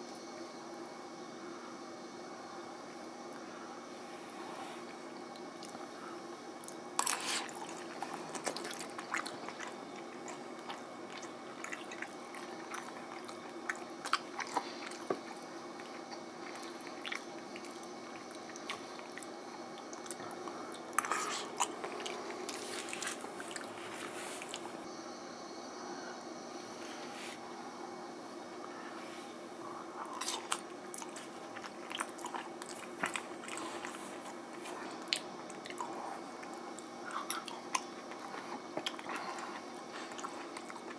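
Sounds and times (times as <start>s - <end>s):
steady low hum: 0.0s - 40.9s
person chewing noodles: 6.6s - 24.9s, 29.6s - 40.9s.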